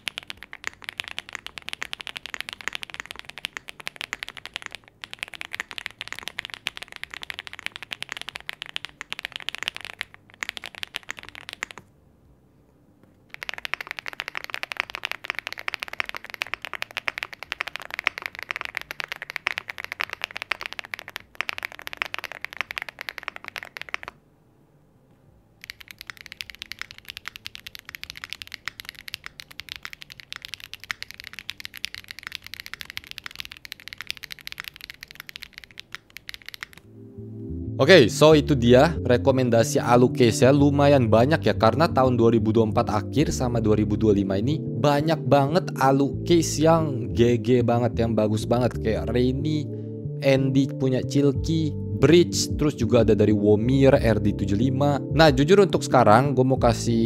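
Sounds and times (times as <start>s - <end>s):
rapid mechanical keyboard typing: 0.0s - 11.9s, 13.3s - 24.2s, 25.6s - 36.8s.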